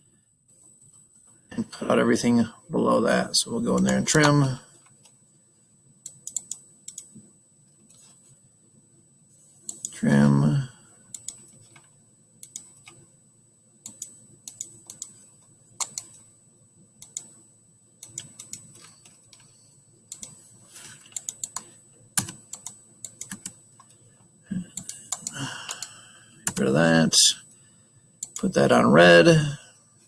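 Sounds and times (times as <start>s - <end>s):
computer keyboard clicking: 6.1s - 7.1s, 11.1s - 11.4s, 12.4s - 13.0s, 13.9s - 15.2s, 15.8s - 16.1s, 17.0s - 17.3s, 18.0s - 19.4s, 20.1s - 20.4s, 21.1s - 23.6s, 24.8s - 25.9s, 28.2s - 28.4s
mouse clicking: 6.1s - 7.1s, 9.7s - 10.0s, 11.1s - 11.4s, 12.4s - 13.0s, 13.8s - 15.2s, 15.8s - 16.1s, 17.0s - 17.3s, 18.0s - 18.7s, 20.1s - 20.4s, 21.1s - 23.6s, 24.8s - 25.9s.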